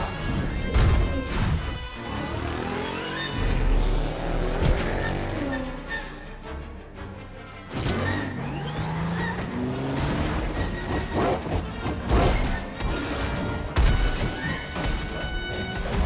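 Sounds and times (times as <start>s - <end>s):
racing car engines revving: 0.0s - 6.1s, 7.6s - 13.8s
orchestral score: 0.0s - 16.0s.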